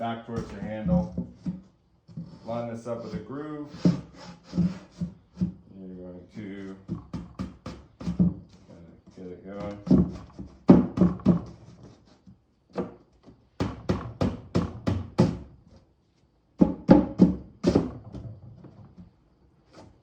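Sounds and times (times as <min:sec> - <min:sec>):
hollow wooden thunks: 0:00.3 - 0:02.4, 0:03.8 - 0:05.7, 0:06.7 - 0:08.7, 0:09.5 - 0:11.9, 0:16.6 - 0:19.1.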